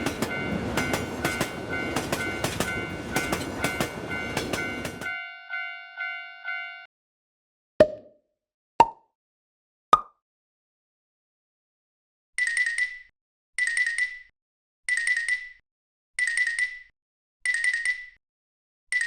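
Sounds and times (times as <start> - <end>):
crossing alarm bell trilling: 0.0 - 6.9.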